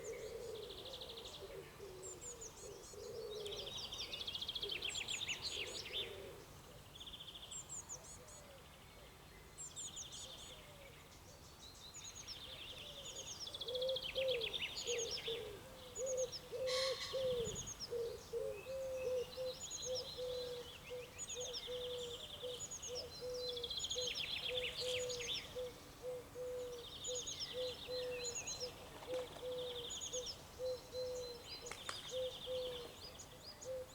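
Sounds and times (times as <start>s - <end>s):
birds chirping and trilling: 13.8s - 33.9s.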